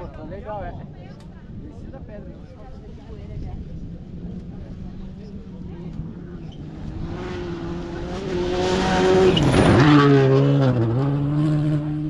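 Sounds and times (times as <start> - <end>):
rally car engine passing by: 5.0 - 12.0.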